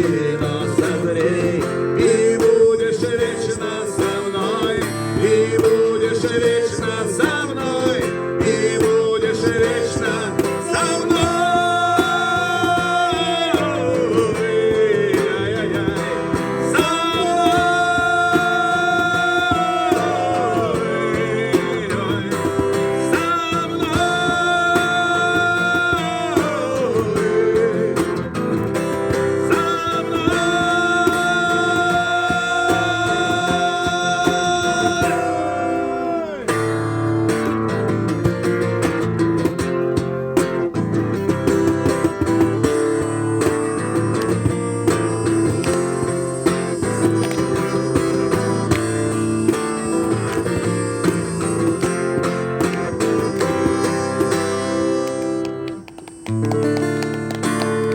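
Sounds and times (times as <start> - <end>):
acoustic guitar playing: 0.0 - 57.9.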